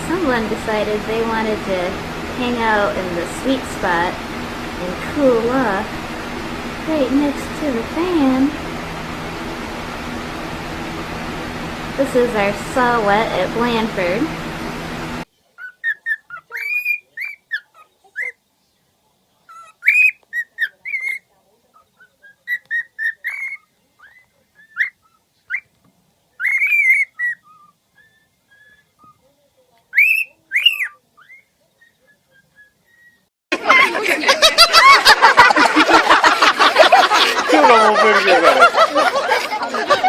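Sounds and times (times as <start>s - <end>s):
pet bird whistling: 26.4s - 29.2s, 29.9s - 33.2s
dense bird chatter: 34.5s - 40.0s.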